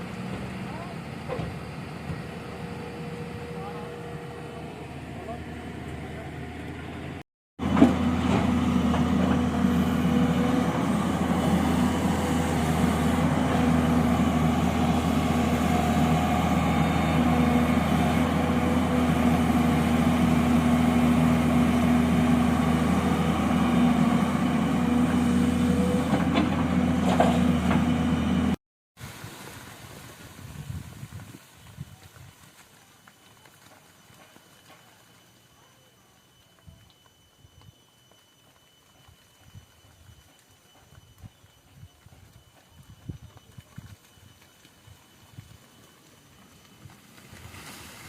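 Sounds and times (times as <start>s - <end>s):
diesel engine of heavy machinery: 0.0s - 28.6s.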